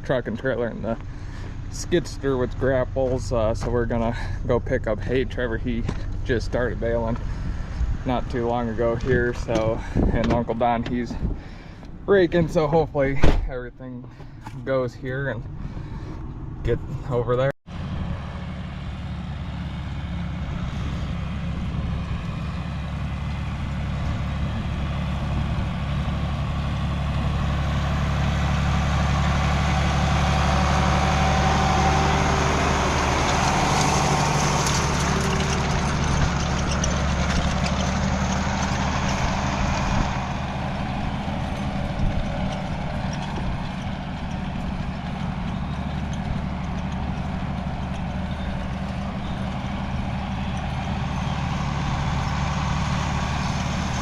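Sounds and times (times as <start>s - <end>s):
farm vehicle engine running: 0.0s - 54.0s
road and rattle noise: 0.0s - 54.0s.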